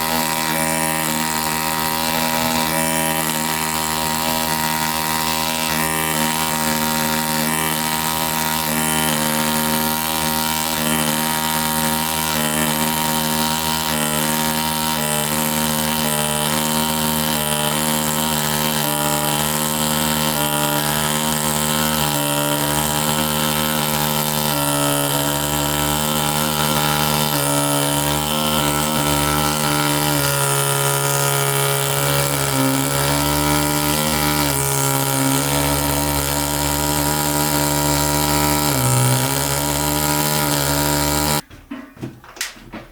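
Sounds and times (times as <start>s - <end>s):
pneumatic air scribe buzzing: 0.0s - 41.4s.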